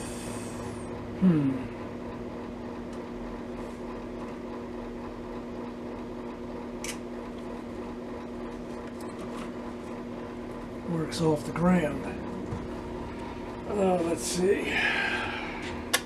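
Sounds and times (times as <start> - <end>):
electrical hum: 0.0 - 16.0
person humming: 1.2 - 1.8.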